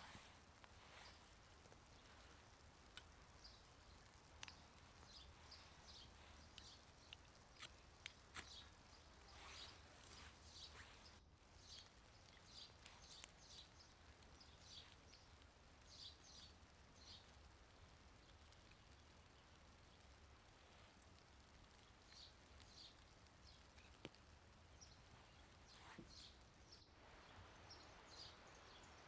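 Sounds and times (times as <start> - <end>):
small birds chirping: 0.0 - 29.0.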